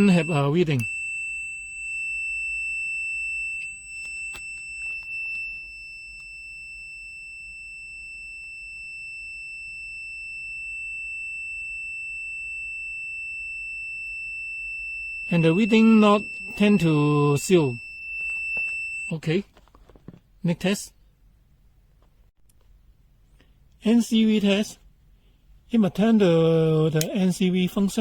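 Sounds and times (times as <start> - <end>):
high-pitched continuity buzzer tone: 0.0 - 19.4.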